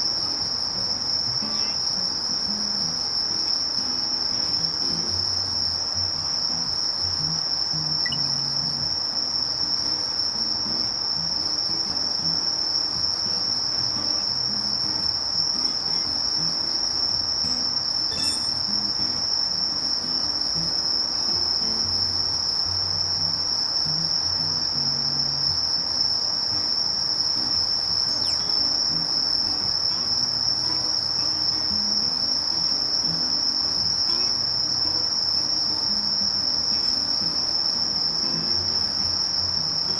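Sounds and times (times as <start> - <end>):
katydid buzzing trill: 0.0 - 2.7, 7.8 - 8.8, 14.0 - 19.8, 27.4 - 30.2.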